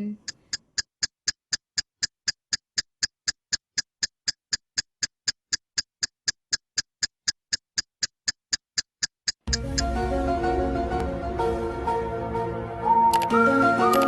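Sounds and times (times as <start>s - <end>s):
clock-like ticking: 0.0s - 10.0s.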